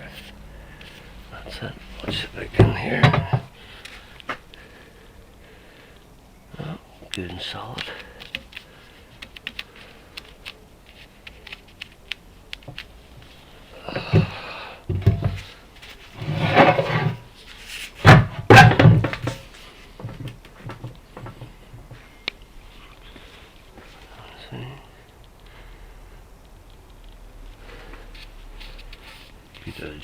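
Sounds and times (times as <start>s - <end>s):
dull thumps and scraping knocks: 2.0s - 3.5s, 14.0s - 22.0s.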